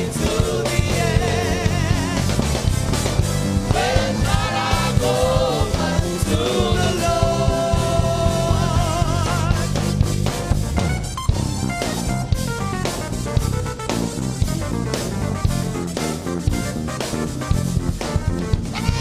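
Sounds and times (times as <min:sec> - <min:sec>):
bass line: 0:00.0 - 0:19.0
drums: 0:00.0 - 0:19.0
person singing with vibrato: 0:03.7 - 0:09.8.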